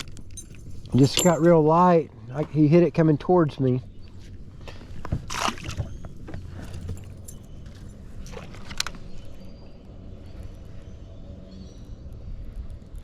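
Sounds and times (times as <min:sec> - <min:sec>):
fishing gear knocks and rattles: 0:00.0 - 0:01.6, 0:06.5 - 0:08.8.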